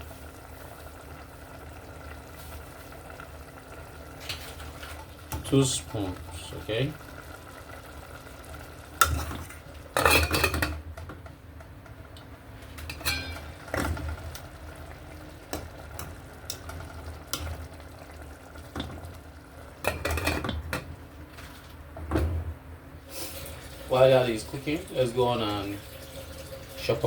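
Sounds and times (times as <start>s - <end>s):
metal spoon scraping cooking pot: 12.9s - 13.5s.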